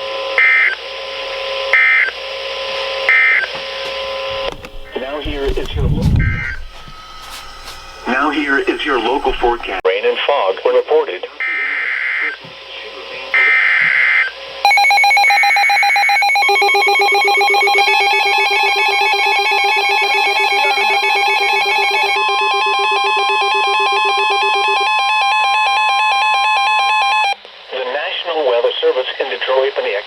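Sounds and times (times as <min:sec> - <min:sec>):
steady warning alarm tone: 0:04.3 - 0:09.8, 0:13.5 - 0:25.7.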